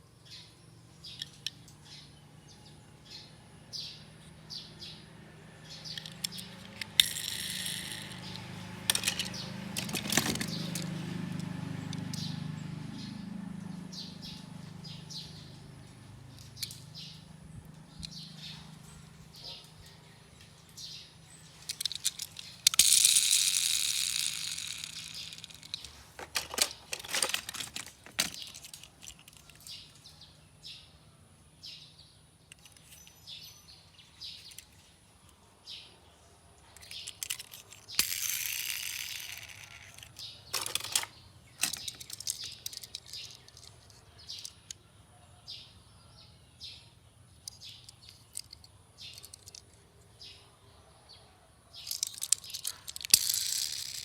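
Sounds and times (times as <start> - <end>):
birds chirping faintly: 0.0 - 54.0
metal toy cars clinking: 5.6 - 12.3, 16.3 - 17.2, 18.0 - 30.2, 32.5 - 35.0, 36.6 - 44.8, 47.4 - 50.4, 51.7 - 54.0
toy cars rolling on hard surface: 5.8 - 12.3, 20.8 - 29.9, 36.7 - 44.8, 47.4 - 49.9, 51.8 - 54.0.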